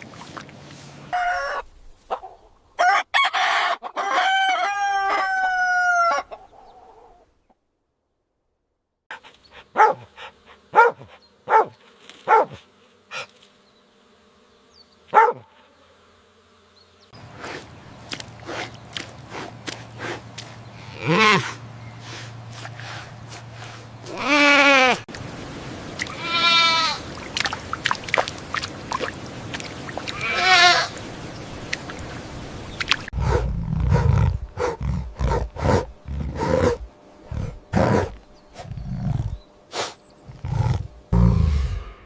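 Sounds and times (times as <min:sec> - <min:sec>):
goat bleating: 0:24.1 - 0:25.0, 0:26.1 - 0:27.1, 0:30.1 - 0:30.9.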